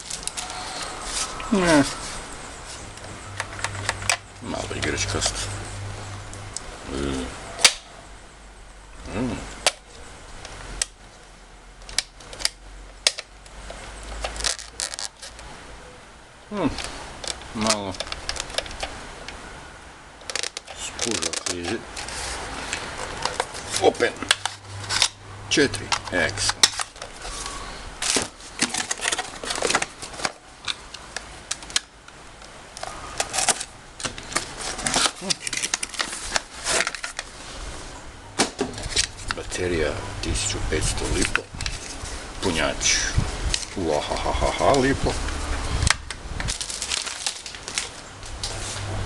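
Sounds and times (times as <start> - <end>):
sharp clicks and crinkles: 0.0 - 2.0, 2.6 - 5.6, 7.6 - 7.9, 9.6 - 11.0, 11.8 - 15.5, 16.7 - 19.4, 20.2 - 37.4, 38.4 - 39.6, 40.9 - 42.1, 42.9 - 48.6
packaging rustling: 0.0 - 4.2, 13.1 - 15.5, 16.7 - 19.0, 20.2 - 31.8, 32.8 - 37.4, 46.4 - 48.8
plastic toy car clicking: 16.8 - 18.9.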